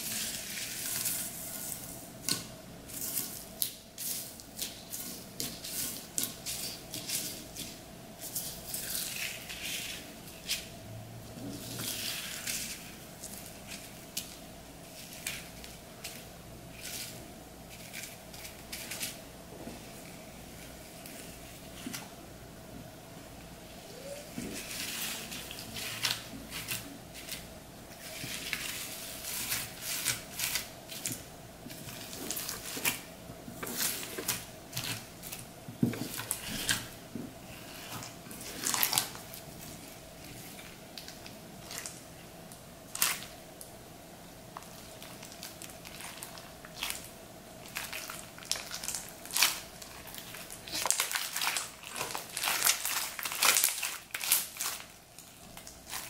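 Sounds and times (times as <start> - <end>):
slime with foam beads crackling: 0.0 - 2.0, 37.5 - 42.0, 44.6 - 56.0.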